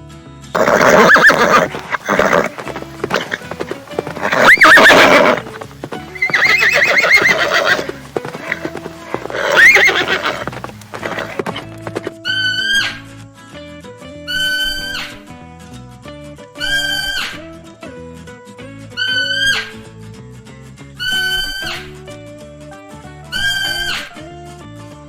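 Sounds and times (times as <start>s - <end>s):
horses neighing: 0.6s - 12.1s.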